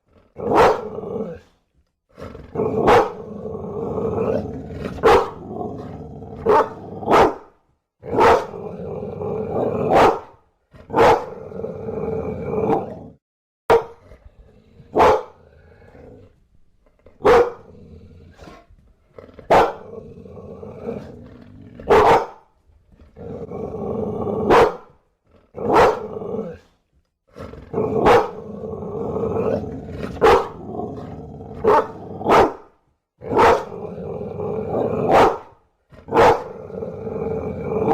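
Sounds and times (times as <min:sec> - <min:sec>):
dog barking: 0:00.4 - 0:01.0, 0:02.8 - 0:03.2, 0:04.9 - 0:05.4, 0:06.4 - 0:08.6, 0:09.8 - 0:11.4, 0:13.7 - 0:14.0, 0:14.9 - 0:15.4, 0:17.2 - 0:17.7, 0:19.5 - 0:19.9, 0:21.8 - 0:22.5, 0:24.4 - 0:25.0, 0:25.6 - 0:26.1, 0:27.9 - 0:28.4, 0:30.2 - 0:30.6, 0:31.6 - 0:33.8, 0:35.0 - 0:36.6.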